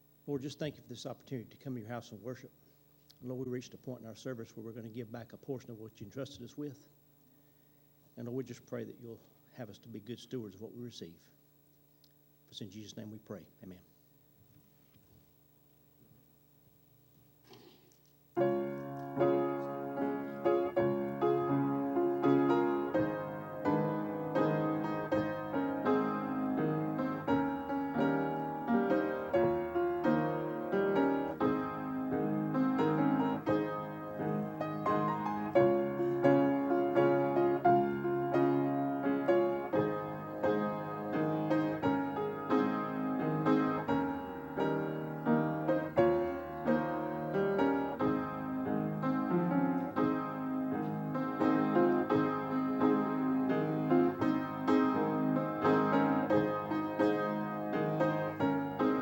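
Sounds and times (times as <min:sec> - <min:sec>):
solo piano playing: 0:18.4 - 0:59.0.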